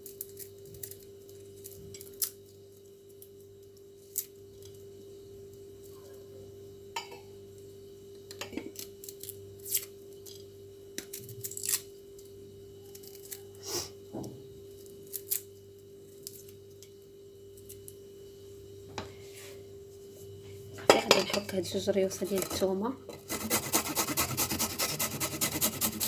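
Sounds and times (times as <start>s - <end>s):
steady hum: 11.8s - 26.0s.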